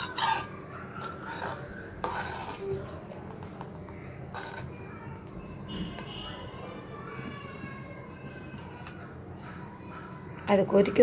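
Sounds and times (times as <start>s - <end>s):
metal spoon stirring thick mixture: 0.0s - 6.8s.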